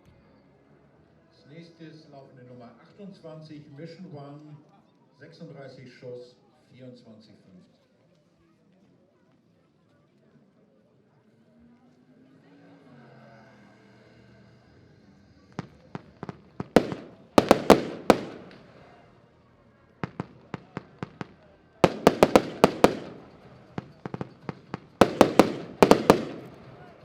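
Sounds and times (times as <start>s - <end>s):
firework battery bangs: 15.6s - 18.7s, 20.1s - 26.9s.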